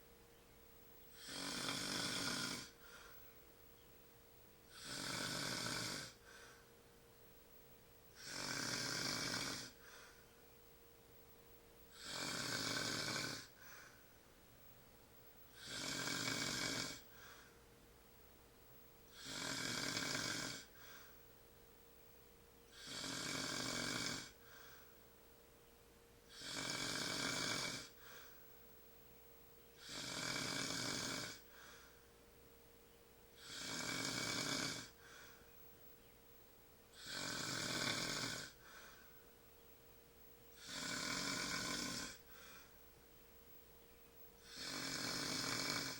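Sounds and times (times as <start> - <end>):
man snoring: 1.1 - 2.9, 4.7 - 6.4, 8.2 - 9.9, 11.9 - 13.8, 15.5 - 17.4, 19.1 - 21.0, 22.7 - 24.6, 26.3 - 28.3, 29.8 - 31.7, 33.4 - 35.3, 36.9 - 39.0, 40.5 - 42.7, 44.4 - 45.9
soft breath: 2.6 - 3.9, 6.1 - 6.9, 9.6 - 10.5, 13.3 - 14.8, 16.9 - 17.7, 20.6 - 21.4, 24.3 - 25.1, 27.9 - 28.6, 31.4 - 32.2, 34.9 - 36.1, 38.4 - 39.4, 41.8 - 43.6.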